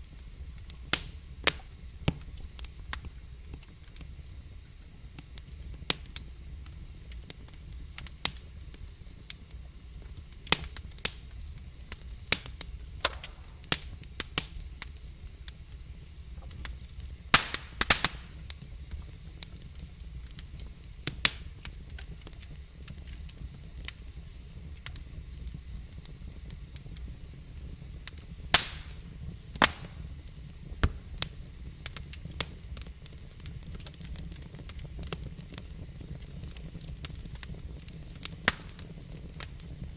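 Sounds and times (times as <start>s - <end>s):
fire crackling and popping: 0.0s - 39.9s
low rumble of flames: 0.0s - 39.9s.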